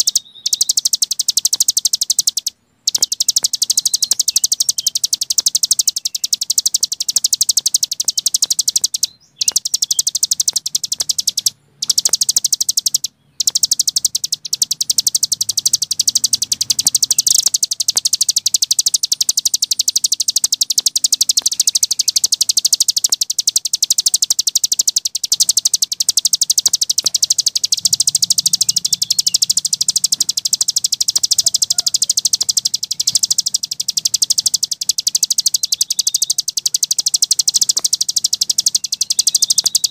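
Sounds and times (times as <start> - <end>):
songbird chattering song: 0.0 - 39.9.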